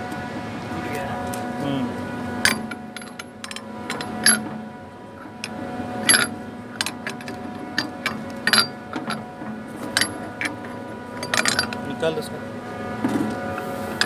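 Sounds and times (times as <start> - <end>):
steady machinery hum: 0.0 - 14.0
metal tools clinking on steel: 6.1 - 9.2, 11.2 - 12.0.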